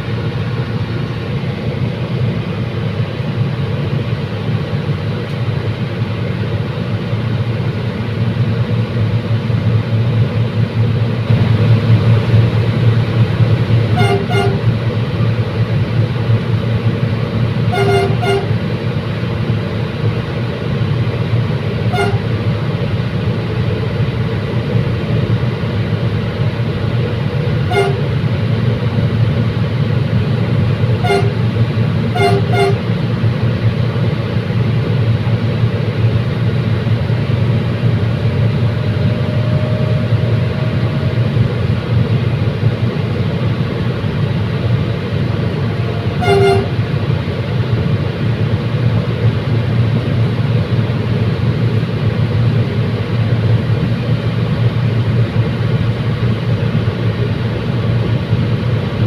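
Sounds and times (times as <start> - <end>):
train rumbling: 0.0 - 59.0
train horn toots: 13.8 - 14.8, 17.7 - 18.6, 21.9 - 22.4, 27.6 - 28.2, 31.0 - 33.0, 38.3 - 41.6, 45.6 - 47.1.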